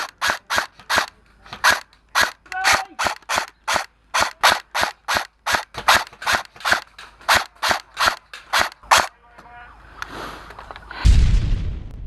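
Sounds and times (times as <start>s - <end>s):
airsoft gun shots: 0.0s - 9.1s.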